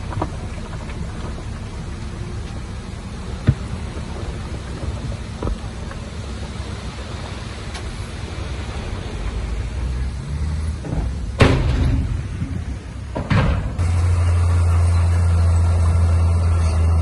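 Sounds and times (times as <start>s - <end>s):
diesel engine rumbling: 0.0s - 17.0s
loud bangs: 10.8s - 15.6s.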